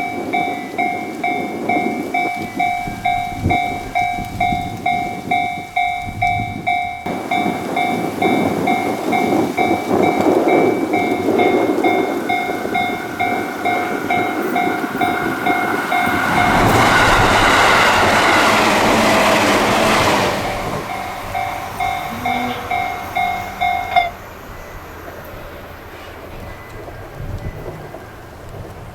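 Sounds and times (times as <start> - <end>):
level-crossing electronic bell: 0.0 - 17.2, 20.8 - 24.8
train rushing past: 0.0 - 28.9.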